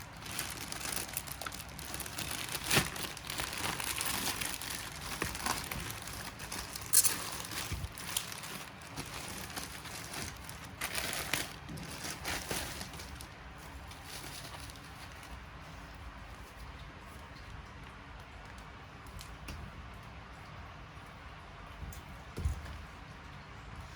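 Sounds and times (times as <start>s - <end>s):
packaging rustling and crinkling: 0.0s - 15.6s.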